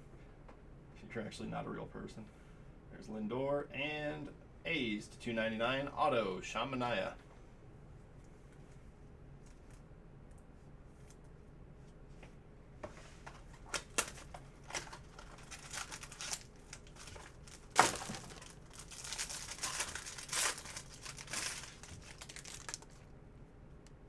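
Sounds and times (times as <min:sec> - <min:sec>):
card wrapper crinkling: 0:13.4 - 0:23.1
wrapper ripping: 0:13.5 - 0:23.1.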